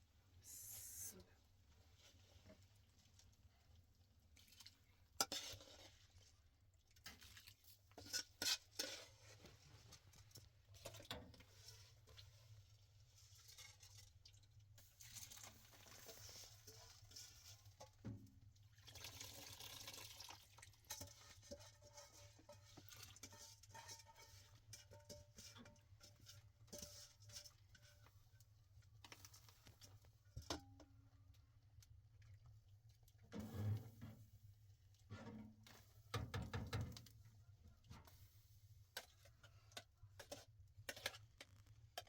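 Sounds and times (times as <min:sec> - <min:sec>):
soft hissing of liquid: 0:00.4 - 0:01.2
pots and utensils clinking: 0:20.5 - 0:28.0.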